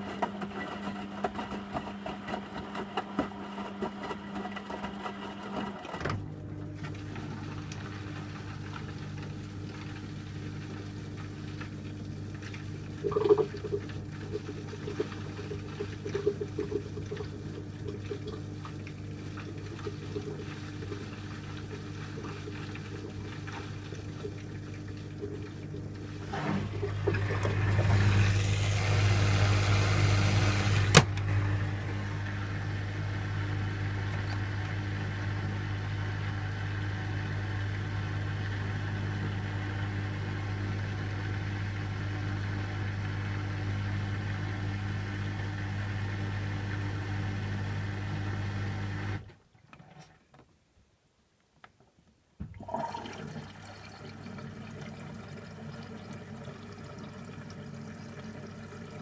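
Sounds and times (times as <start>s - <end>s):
washing machine humming: 0.0s - 49.6s, 52.4s - 59.0s
water trickling and pouring: 52.5s - 59.0s.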